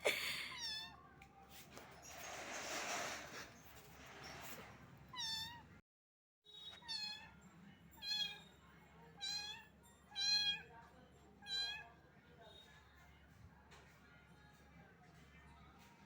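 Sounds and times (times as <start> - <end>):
kitten meowing: 5.2 - 5.6.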